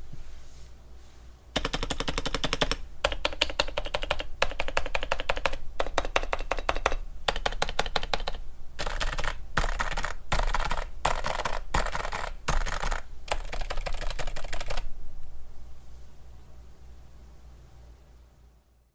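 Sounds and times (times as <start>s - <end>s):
fast typing on keyboard: 1.6s - 14.9s.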